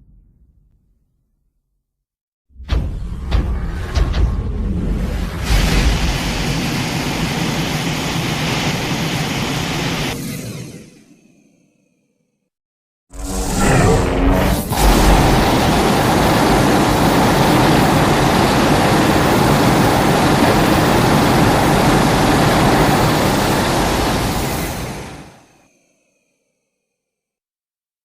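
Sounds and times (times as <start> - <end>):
loud monster sound effect: 13.1 - 25.5
loud steady rushing noise: 14.6 - 25.5.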